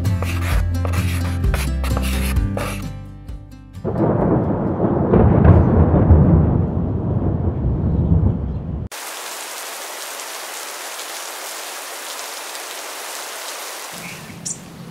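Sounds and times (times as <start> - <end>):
background music: 0.0 - 5.1
loud rough rumbling noise: 3.9 - 8.9.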